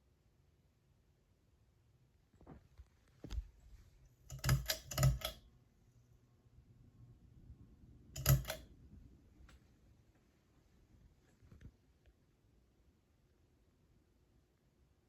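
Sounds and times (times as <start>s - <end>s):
sharp clicks: 4.3s - 5.4s, 8.2s - 8.6s.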